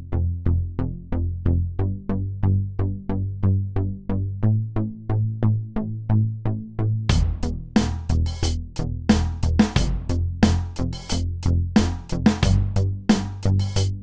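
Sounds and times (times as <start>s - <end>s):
electronic music with plucked notes: 7.1s - 14.0s.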